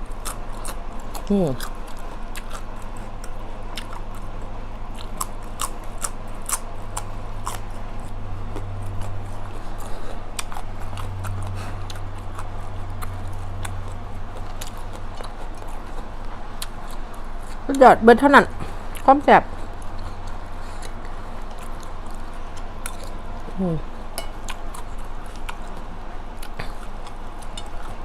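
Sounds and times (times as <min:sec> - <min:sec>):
person chewing close up: 0:00.0 - 0:17.7, 0:18.6 - 0:28.0
low steady hum: 0:00.0 - 0:28.0
mouth clicks and crunches: 0:00.1 - 0:17.7.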